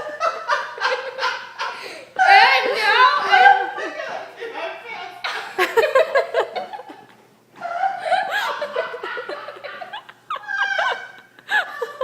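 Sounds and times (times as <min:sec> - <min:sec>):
person laughing: 0:05.3 - 0:12.0.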